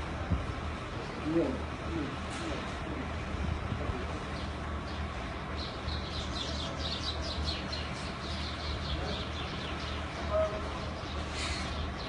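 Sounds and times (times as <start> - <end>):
small birds chirping: 4.2 - 12.0.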